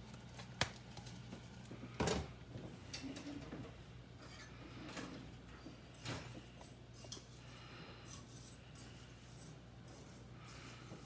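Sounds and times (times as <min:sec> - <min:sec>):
faint steady hum: 0:00.0 - 0:11.0
utensil scraping in a bowl: 0:06.5 - 0:11.0.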